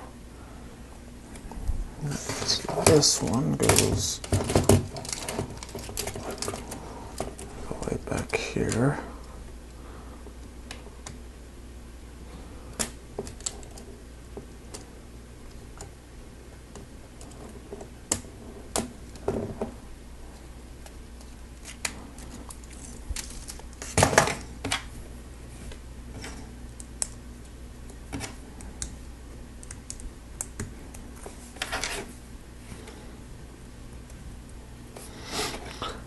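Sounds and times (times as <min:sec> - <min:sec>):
low steady hum: 0:00.0 - 0:36.0
plastic parts clicking and snapping: 0:02.3 - 0:08.9.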